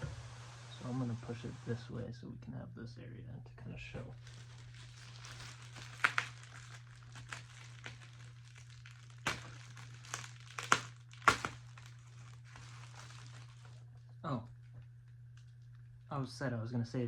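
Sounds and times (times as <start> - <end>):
packaging rustling and crinkling: 4.0 - 16.0.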